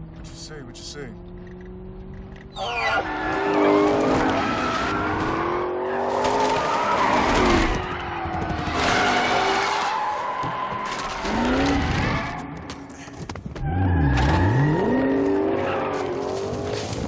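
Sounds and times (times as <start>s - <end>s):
car engine revving: 0.0s - 10.0s
tyres squealing and skidding: 2.4s - 17.0s.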